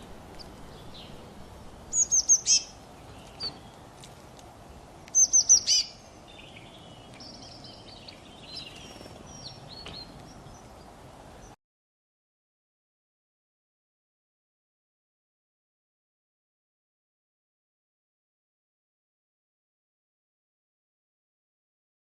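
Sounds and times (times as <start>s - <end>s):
steady background hiss: 0.0s - 11.6s
birds chirping and singing: 0.3s - 3.9s, 5.1s - 11.6s.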